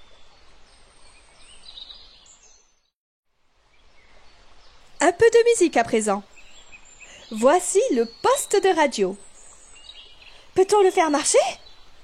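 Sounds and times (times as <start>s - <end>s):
birds chirping: 0.0s - 2.9s, 3.7s - 12.0s
faint countryside ambience: 3.3s - 12.0s.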